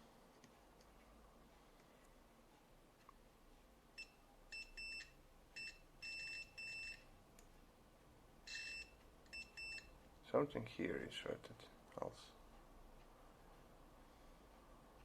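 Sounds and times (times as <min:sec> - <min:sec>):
multimeter continuity beeps: 0:04.0 - 0:07.1, 0:08.4 - 0:10.0.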